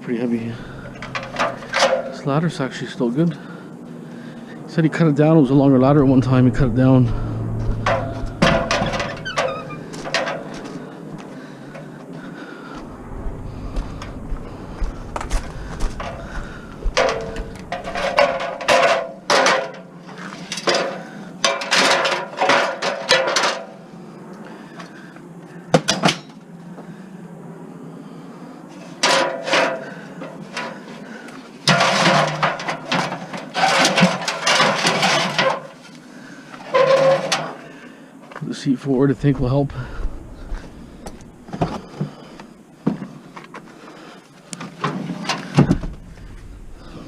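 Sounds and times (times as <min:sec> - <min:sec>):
scrap clattering and scraping: 0:00.3 - 0:02.6, 0:05.9 - 0:23.7, 0:29.0 - 0:37.6.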